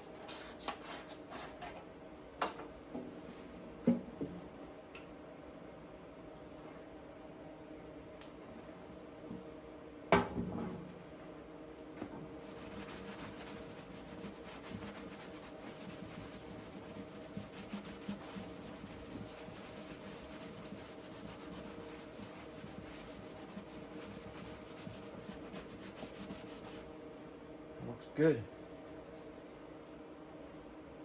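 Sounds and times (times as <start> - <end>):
scratchy rubbing on metal: 12.4 - 26.8.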